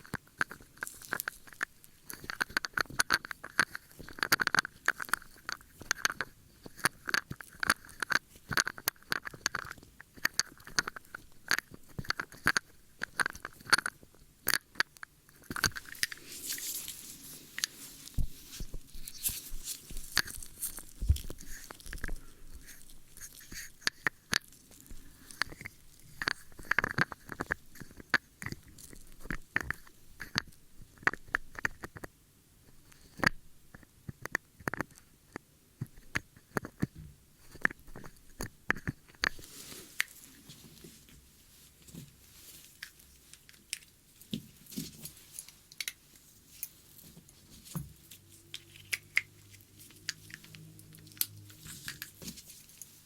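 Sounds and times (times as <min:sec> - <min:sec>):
crackling and scratching at microphone: 0:00.0 - 0:53.0
soft brushing hiss: 0:15.2 - 0:30.8, 0:37.1 - 0:53.0.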